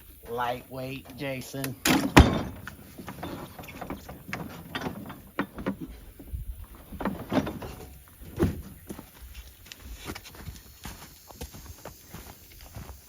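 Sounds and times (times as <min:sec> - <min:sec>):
knocks and clunks: 0:01.0 - 0:09.1.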